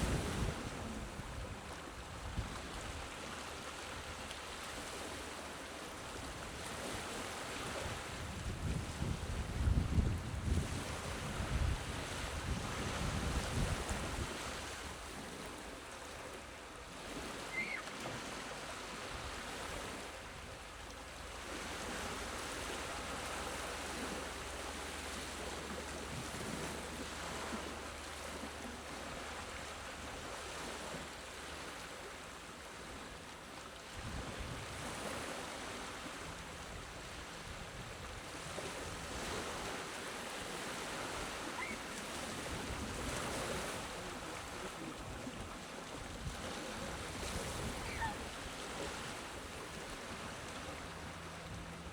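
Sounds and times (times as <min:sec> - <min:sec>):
small waves washing ashore: 0:00.0 - 0:51.9
wind buffeting microphone: 0:07.8 - 0:14.6.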